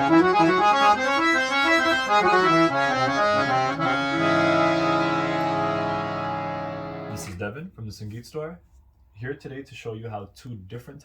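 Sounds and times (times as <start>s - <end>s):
harmonium playing: 0.0s - 7.4s.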